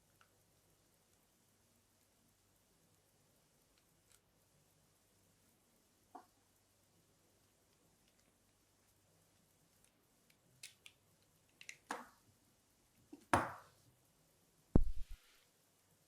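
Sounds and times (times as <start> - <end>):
heavy low thump: 14.8 - 15.2.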